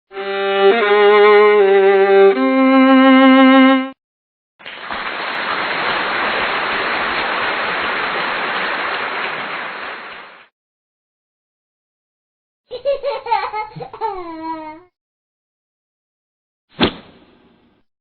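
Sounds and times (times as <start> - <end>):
violin notes with vibrato: 0.1 - 4.0.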